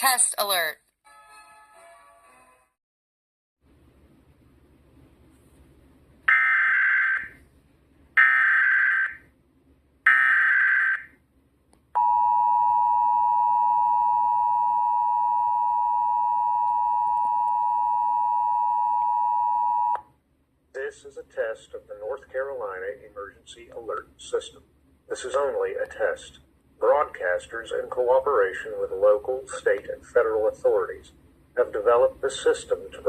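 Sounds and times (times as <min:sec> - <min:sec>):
steady two-tone alert signal: 0:12.0 - 0:20.0.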